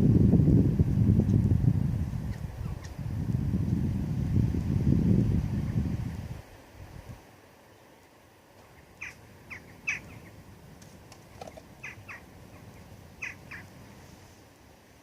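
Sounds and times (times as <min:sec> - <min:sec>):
faint background hiss: 0:00.0 - 0:15.0
small bird chirping: 0:08.7 - 0:10.4, 0:11.5 - 0:13.7.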